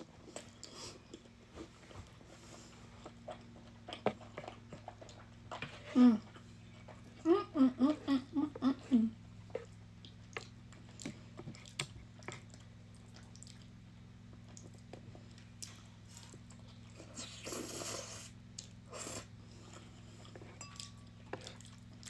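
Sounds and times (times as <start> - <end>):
steady low hum: 0.0 - 22.0
close chewing with wet clicks: 2.9 - 5.6, 9.4 - 22.0.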